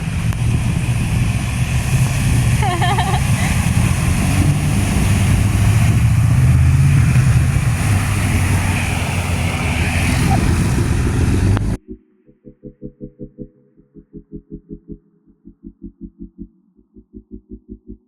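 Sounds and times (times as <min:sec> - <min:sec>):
vehicle engine rumbling: 0:00.0 - 0:11.8.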